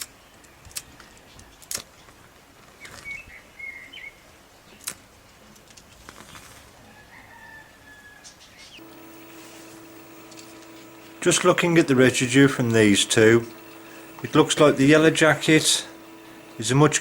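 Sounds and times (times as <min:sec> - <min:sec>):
sharp clicks: 0:08.8 - 0:17.0.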